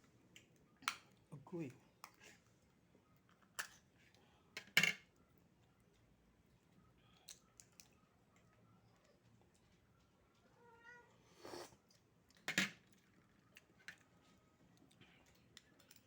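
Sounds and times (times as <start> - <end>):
cat meowing: 10.6 - 11.4.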